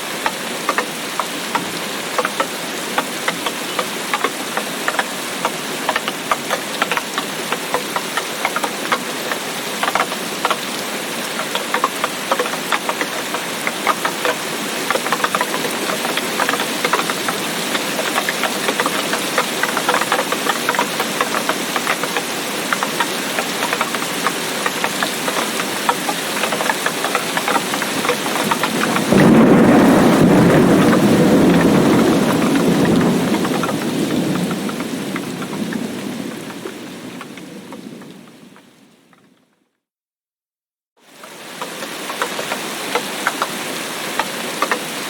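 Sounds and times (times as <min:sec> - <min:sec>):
heavy rain pouring: 0:00.0 - 0:39.4, 0:41.0 - 0:45.0
thunderclap rumbling: 0:27.4 - 0:38.8.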